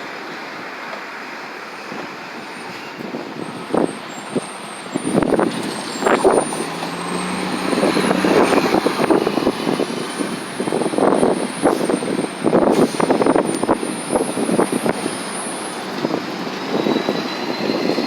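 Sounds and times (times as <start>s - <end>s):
bus engine running: 0.1s - 18.0s
wind gusting on microphone: 1.9s - 18.0s.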